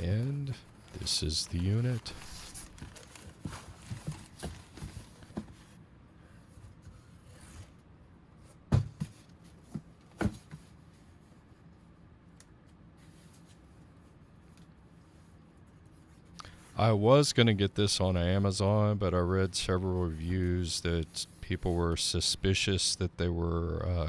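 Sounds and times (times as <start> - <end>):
packaging rustling: 0.0 - 5.4.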